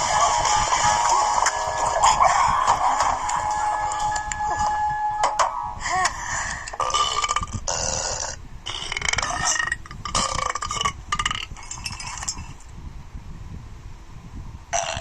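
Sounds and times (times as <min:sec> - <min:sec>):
loud burps: 0:06.8 - 0:11.8, 0:14.7 - 0:15.0.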